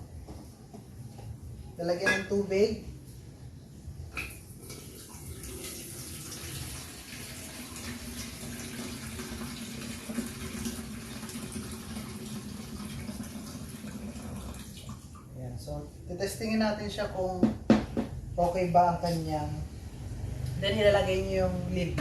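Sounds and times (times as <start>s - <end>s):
water pouring into tank: 4.6s - 15.3s.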